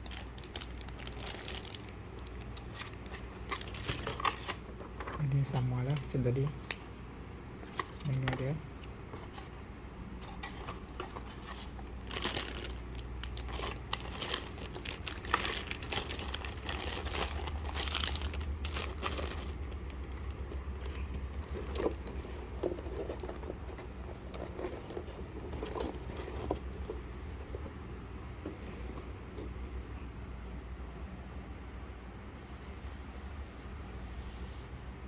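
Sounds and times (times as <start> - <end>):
packaging crinkling and tearing: 0.0 - 6.8, 10.3 - 27.0
soft rustling and handling: 0.0 - 30.2, 32.2 - 35.0.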